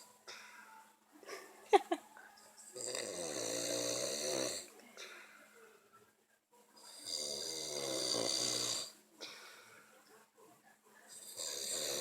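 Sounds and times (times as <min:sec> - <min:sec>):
person snoring: 0:02.8 - 0:04.7, 0:06.9 - 0:09.0, 0:11.2 - 0:12.0.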